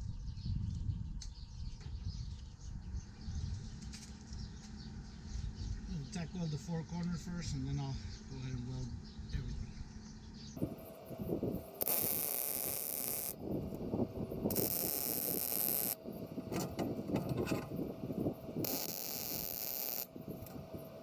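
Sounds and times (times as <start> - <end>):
welding arc crackling hiss: 10.6 - 16.5, 17.7 - 21.0.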